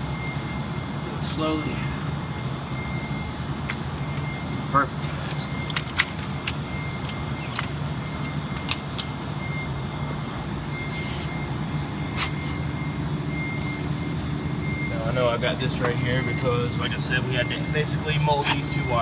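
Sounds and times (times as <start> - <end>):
metallic clicks and clinks: 5.3 - 9.2.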